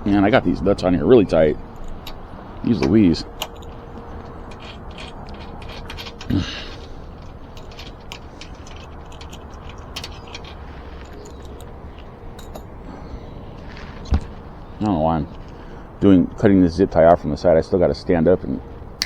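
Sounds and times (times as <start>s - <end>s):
hand tools clicking on metal: 1.7s - 12.7s
person grunting: 6.3s - 6.7s.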